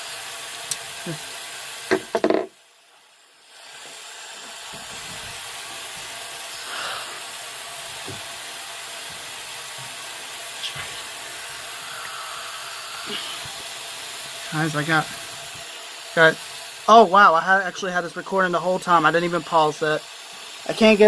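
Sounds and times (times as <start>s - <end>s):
water hissing through valve: 0.0s - 2.2s, 3.3s - 21.0s.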